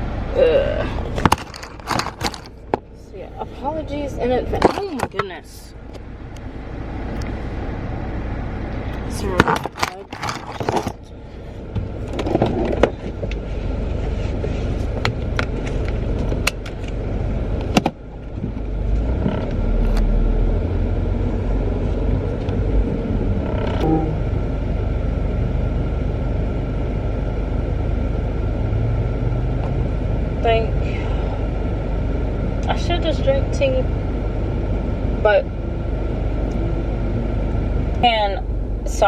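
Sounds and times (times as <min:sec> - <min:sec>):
car engine and road rumble: 0:00.0 - 0:39.0.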